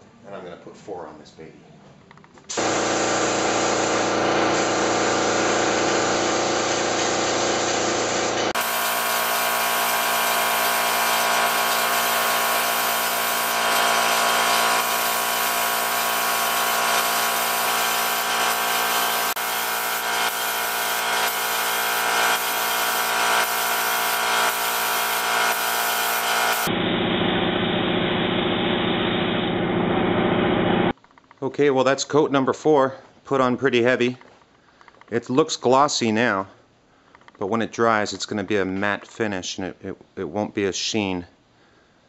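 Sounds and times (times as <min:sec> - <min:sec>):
power tool motor whirring: 0:08.5 - 0:26.7.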